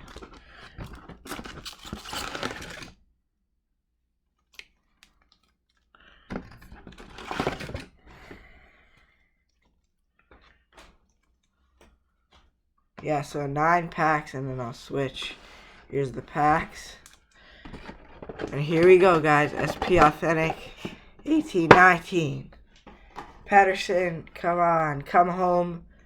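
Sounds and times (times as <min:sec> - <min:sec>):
wrapper crinkling and tearing: 0:00.0 - 0:03.0
cardboard rustling: 0:06.6 - 0:08.3, 0:14.7 - 0:22.4.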